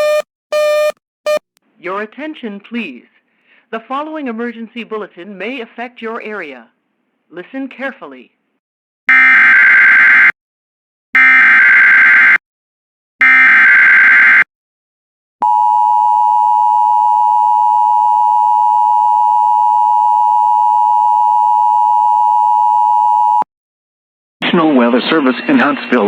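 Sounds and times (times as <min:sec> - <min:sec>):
two-tone attention signal: 0:00.0 - 0:01.4.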